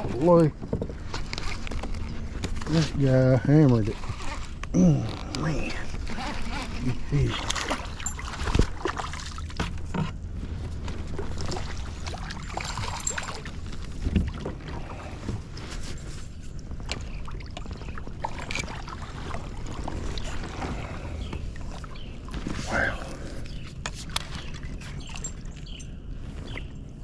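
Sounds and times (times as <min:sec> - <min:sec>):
wind rumble on microphone: 0:09.5 - 0:18.2.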